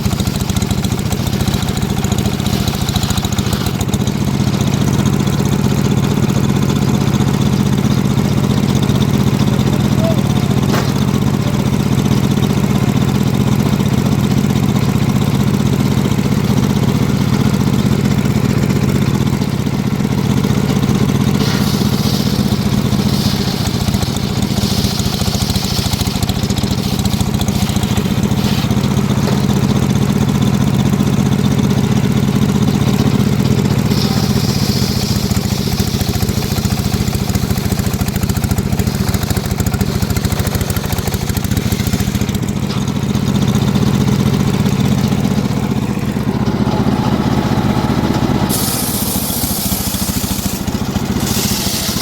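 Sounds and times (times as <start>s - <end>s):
sawmill engine running: 0.0s - 52.0s
high hiss: 21.4s - 28.7s, 33.9s - 37.5s, 48.5s - 52.0s.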